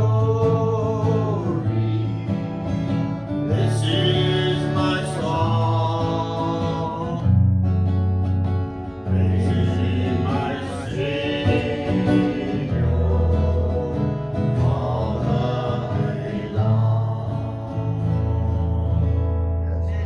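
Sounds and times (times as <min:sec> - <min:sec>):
guitar playing gospel music: 0:00.0 - 0:20.0
bass notes: 0:07.2 - 0:20.0.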